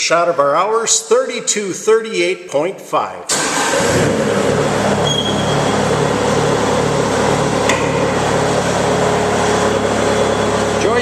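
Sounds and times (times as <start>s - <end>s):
diesel engine running steadily: 3.6s - 11.0s.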